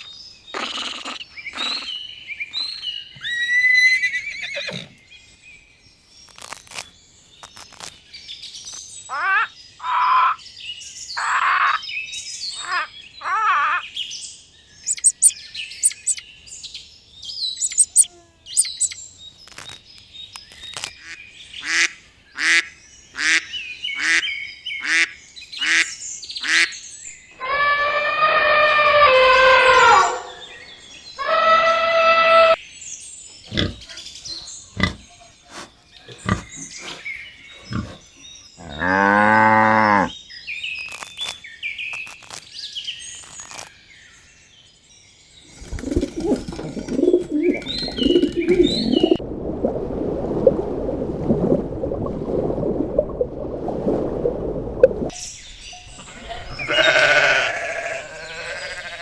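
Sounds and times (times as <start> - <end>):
animal calls: 14.9 - 16.2, 17.6 - 19.7, 27.4 - 30.6, 55.8 - 59.0.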